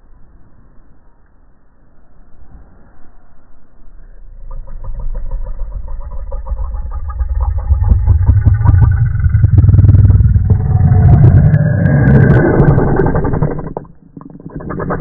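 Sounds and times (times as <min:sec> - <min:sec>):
deep rumbling growl: 0:03.8 - 0:15.0.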